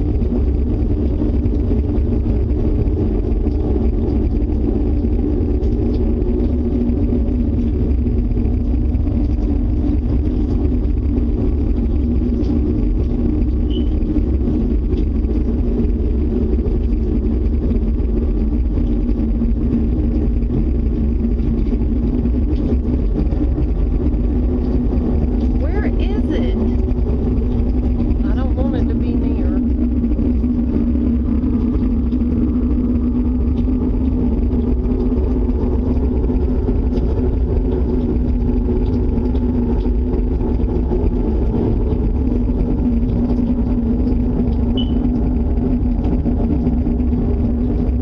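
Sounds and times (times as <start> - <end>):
loud low rumble: 0.0 - 48.0.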